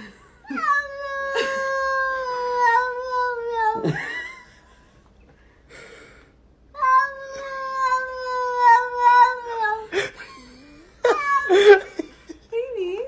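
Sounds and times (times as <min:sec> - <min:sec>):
cat yowling: 0:00.5 - 0:04.0, 0:06.8 - 0:09.9, 0:11.0 - 0:11.9.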